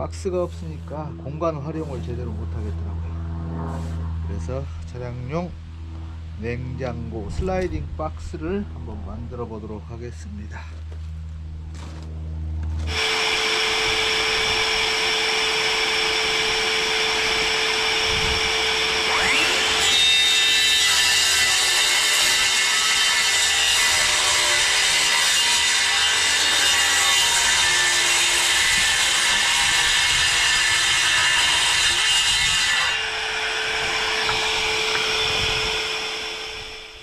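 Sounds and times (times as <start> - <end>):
power saw cutting wood: 0.0 - 4.8, 12.8 - 37.0.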